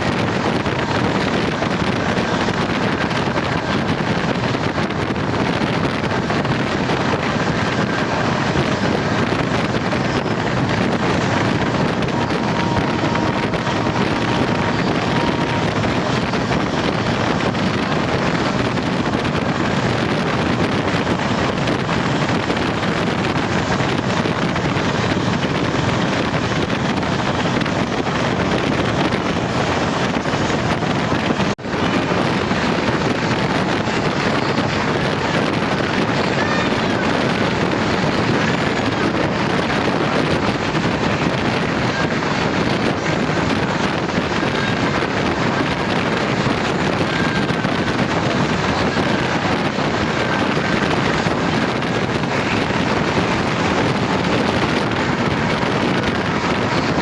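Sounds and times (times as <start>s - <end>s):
train rushing at speed: 0.0s - 57.0s
wind buffeting microphone: 0.0s - 57.0s.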